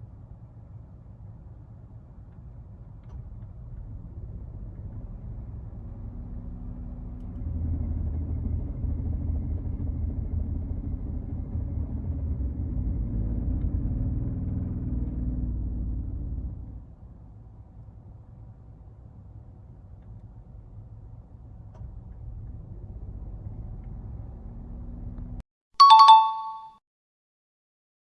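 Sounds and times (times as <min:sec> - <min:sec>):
car engine rumbling: 0:00.0 - 0:25.4.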